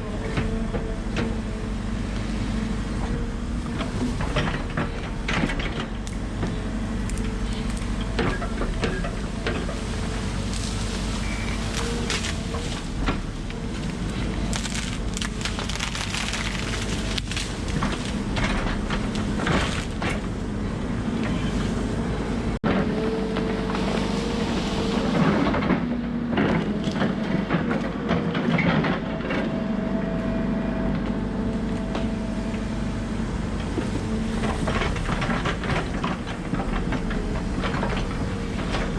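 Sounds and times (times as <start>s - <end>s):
excavator diesel engine: 0.0s - 38.9s
wood cracking and snapping: 8.8s - 20.3s.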